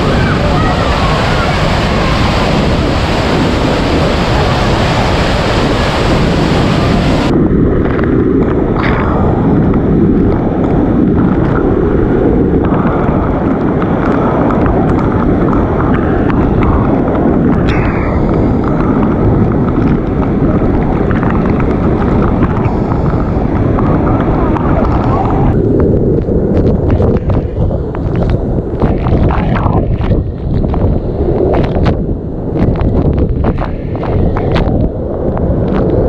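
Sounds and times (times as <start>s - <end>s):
falling water roaring: 0.0s - 36.0s
wind buffeting microphone: 0.0s - 36.0s.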